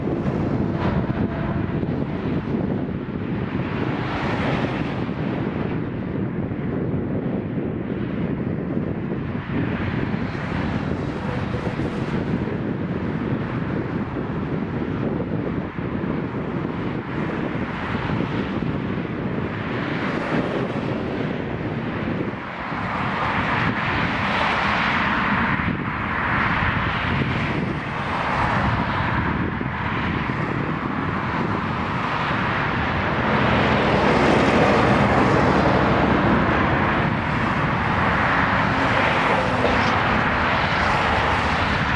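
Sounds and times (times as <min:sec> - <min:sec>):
jet engines rushing: 0:00.0 - 0:05.2, 0:21.4 - 0:41.9.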